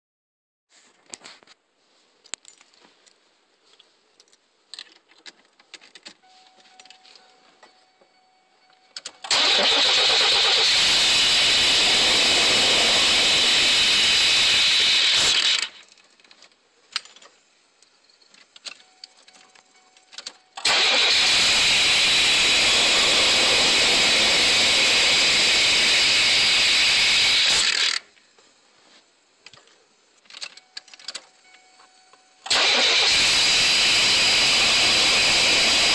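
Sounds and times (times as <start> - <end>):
van engine cranking: 9.0 - 13.8, 20.6 - 28.1, 32.4 - 35.9.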